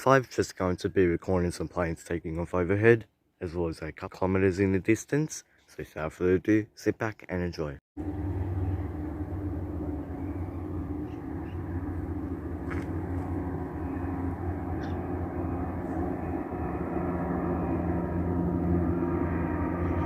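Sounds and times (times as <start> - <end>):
turboprop engines drone: 8.0 - 20.0.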